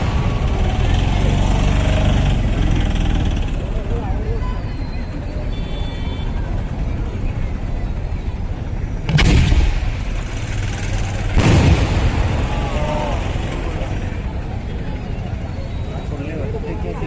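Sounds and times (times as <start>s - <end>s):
firework bangs: 9.1s - 14.0s.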